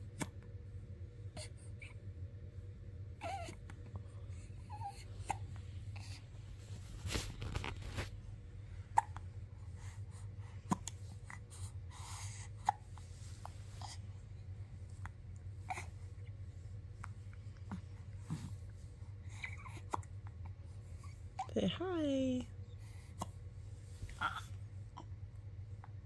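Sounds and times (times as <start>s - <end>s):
baby vocal sound: 24.2s - 24.6s.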